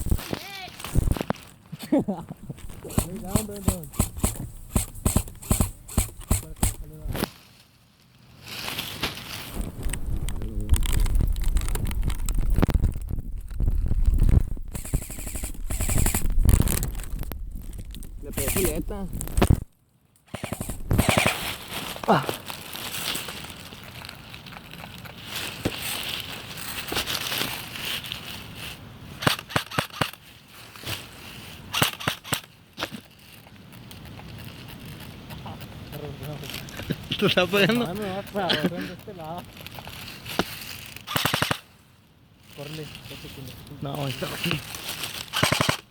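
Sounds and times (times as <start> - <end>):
rustling in brush: 0.0 - 19.7, 20.4 - 29.2, 30.2 - 31.7, 32.8 - 41.0, 42.4 - 45.3
airsoft guns firing bursts: 2.6 - 7.0, 14.7 - 16.3, 18.3 - 18.9, 20.3 - 21.5, 29.2 - 30.2, 31.7 - 32.5, 41.1 - 41.6, 45.3 - 45.9.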